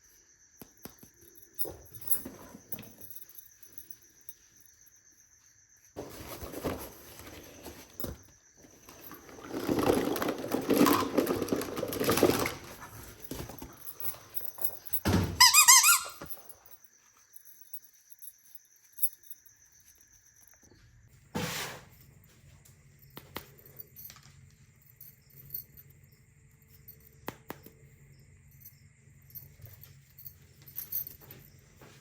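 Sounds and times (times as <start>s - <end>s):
quick loud squeaks: 15.4s - 16.3s.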